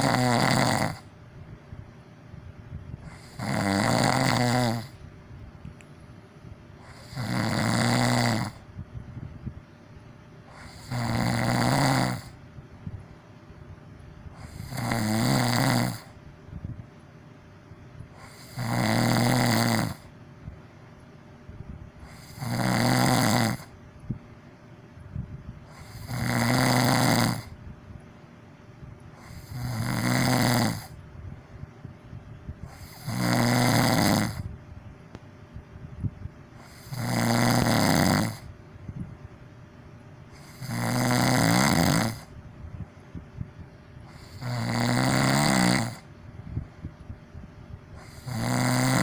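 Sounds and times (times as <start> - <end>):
person snoring loudly: 0.0 - 1.1, 3.0 - 5.0, 6.8 - 8.7, 10.5 - 12.4, 14.4 - 16.2, 18.2 - 20.1, 22.0 - 23.7, 25.7 - 27.6, 29.2 - 31.0, 32.6 - 34.5, 36.6 - 38.5, 40.3 - 42.3, 44.1 - 46.1, 48.0 - 49.0.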